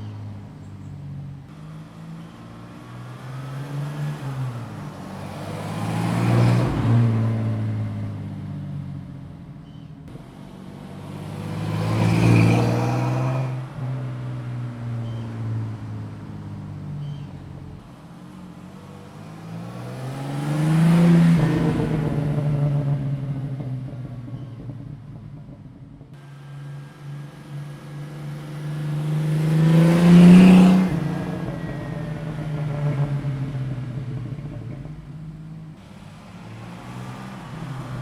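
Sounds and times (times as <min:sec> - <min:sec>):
car exhaust passing by: 0:00.0 - 0:38.0.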